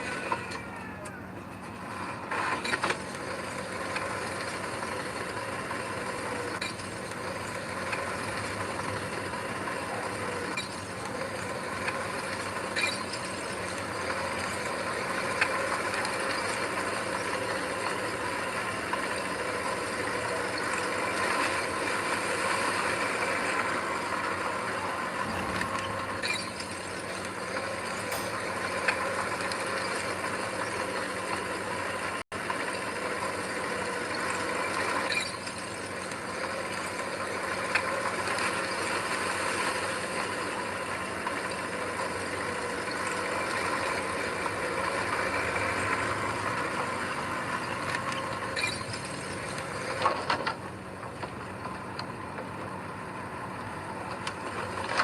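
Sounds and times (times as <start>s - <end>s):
heavy machinery diesel engine: 0.0s - 55.0s
metallic clicks and clanks: 25.2s - 29.0s.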